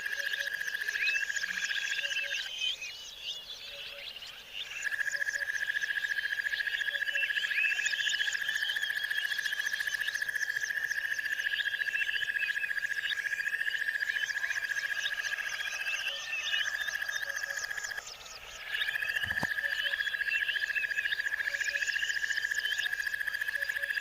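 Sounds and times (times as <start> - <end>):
short chirping calls: 16.0 - 21.0.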